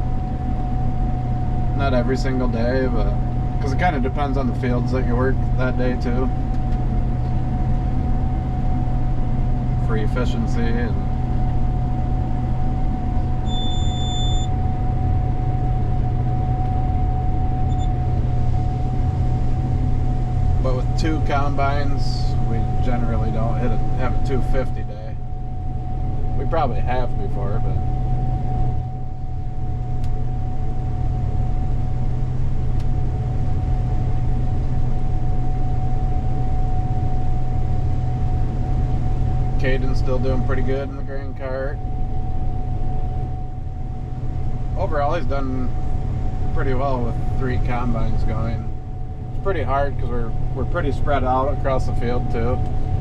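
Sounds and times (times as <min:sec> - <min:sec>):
combine harvester drone: 0:00.0 - 0:53.0
machine whine: 0:00.0 - 0:53.0
electronic beep: 0:13.4 - 0:14.5.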